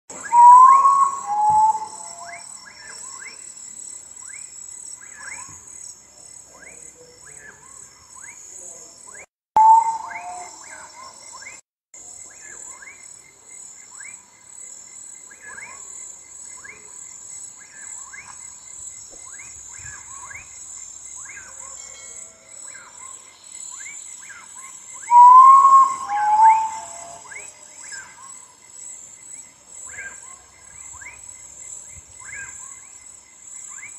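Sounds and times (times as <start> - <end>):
high buzz of night insects: 0.1 - 33.9
potoo singing mournful whistled phrase: 0.2 - 2.4, 9.6 - 10.8, 25.1 - 27.5.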